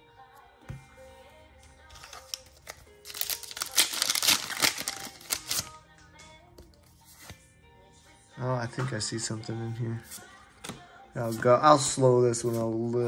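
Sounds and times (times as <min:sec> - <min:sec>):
quiet background music: 0:00.0 - 0:13.0
foil wrapper crinkling: 0:02.0 - 0:05.7.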